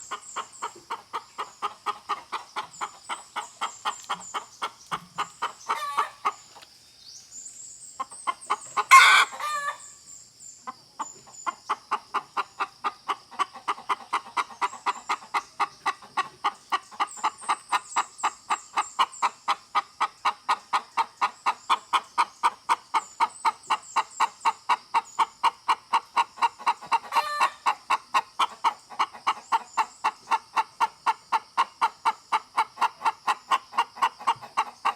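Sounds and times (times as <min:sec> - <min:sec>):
hen clucking: 0:00.0 - 0:06.7, 0:07.9 - 0:10.0, 0:10.6 - 0:34.9
hen squawk: 0:08.7 - 0:09.8.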